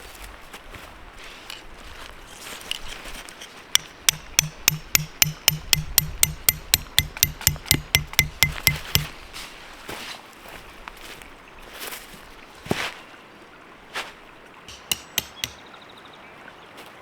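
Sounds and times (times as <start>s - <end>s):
hammer driving stake into dirt: 2.7s - 9.2s, 14.7s - 15.6s.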